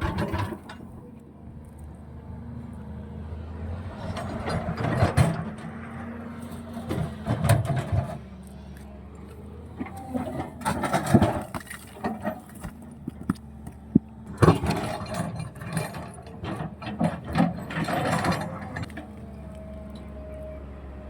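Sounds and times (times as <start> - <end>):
bucket clanking on rock: 0.0 - 1.0, 9.8 - 19.0
excavator diesel engine running: 0.0 - 21.0.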